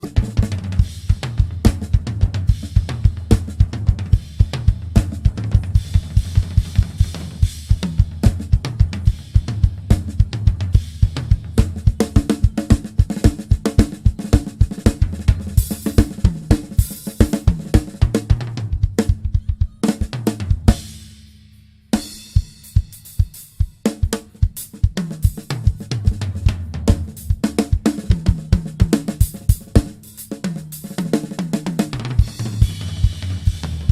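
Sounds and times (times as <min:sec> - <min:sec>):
bass line: 0:00.0 - 0:12.6, 0:32.2 - 0:33.9
fast drum kit beat: 0:00.0 - 0:33.9.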